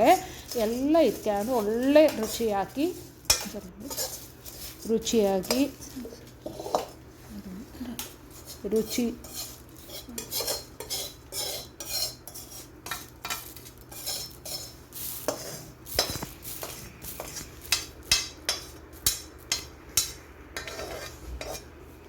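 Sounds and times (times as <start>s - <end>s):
metal spoon scraping a metal pan: 0.0s - 7.0s, 8.3s - 21.7s.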